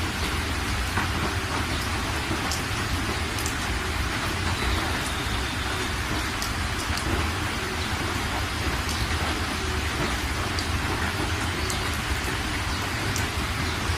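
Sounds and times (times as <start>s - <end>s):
rain drop ticks: 0.0s - 13.9s
steady rain hiss: 0.0s - 13.9s.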